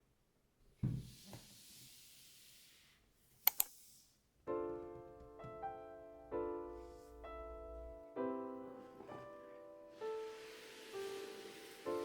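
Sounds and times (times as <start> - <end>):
sharp clicks: 3.4 - 3.7
gentle piano music: 4.5 - 12.0.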